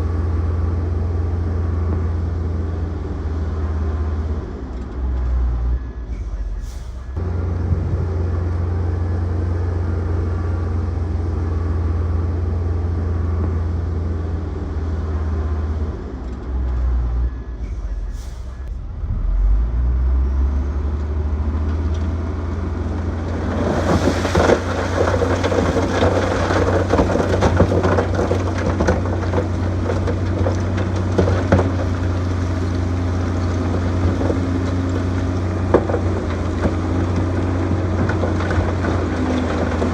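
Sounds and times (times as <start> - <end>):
heavy diesel engine running: 0.0 - 39.9
rattling and crackling of tracks: 22.8 - 39.9.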